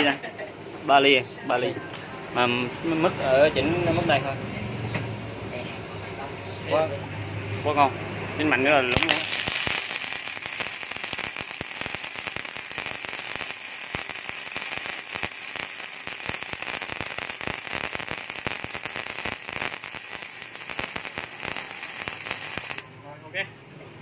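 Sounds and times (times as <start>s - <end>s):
welding arc crackling: 8.8s - 23.0s
sharp spatter pops: 8.9s - 22.9s.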